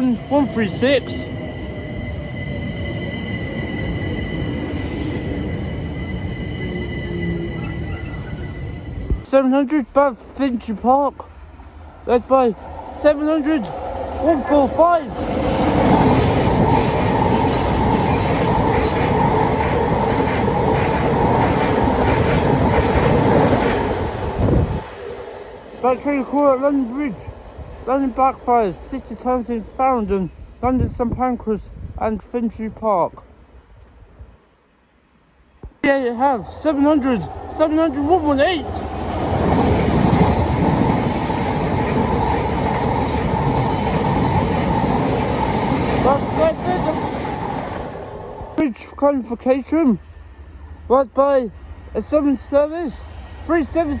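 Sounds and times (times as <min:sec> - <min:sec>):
train wheels rumbling on rail: 0:10.2 - 0:29.8, 0:35.8 - 0:48.6.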